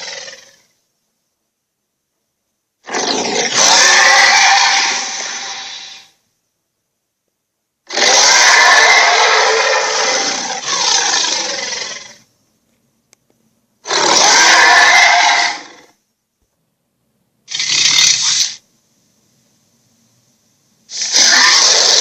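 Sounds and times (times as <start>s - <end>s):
harsh rasping dragon roars: 2.9s - 6.1s, 7.9s - 12.2s, 13.9s - 15.9s, 20.9s - 22.0s.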